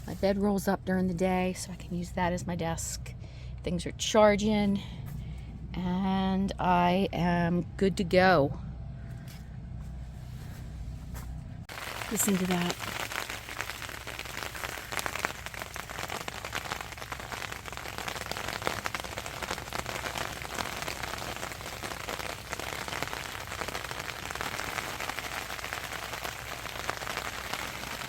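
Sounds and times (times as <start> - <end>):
rain on car roof: 11.7 - 28.0.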